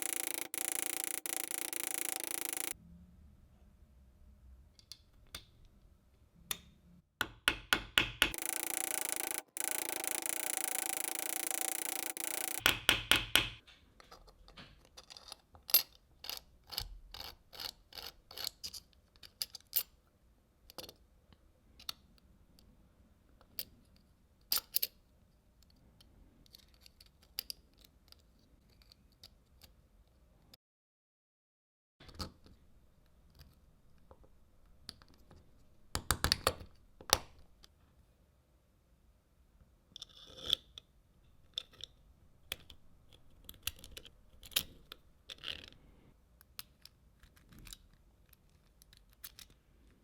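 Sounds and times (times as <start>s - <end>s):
rattling run of clicks: 0.0s - 2.8s, 8.1s - 13.6s
small metal parts clinking: 0.0s - 2.8s, 8.3s - 12.7s.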